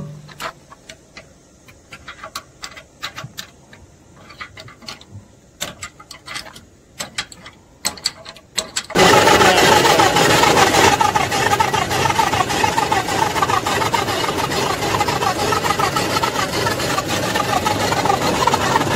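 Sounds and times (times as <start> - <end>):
metallic clicks and knocks: 0.0 - 9.0
road roller engine running: 8.8 - 18.9.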